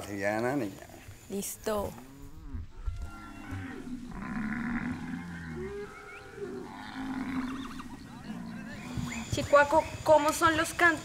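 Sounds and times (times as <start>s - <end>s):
cattle lowing: 0.8s - 9.5s.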